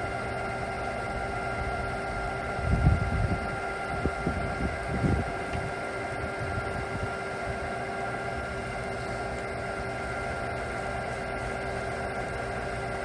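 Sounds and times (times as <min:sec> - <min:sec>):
lathe running: 0:07.1 - 0:13.0.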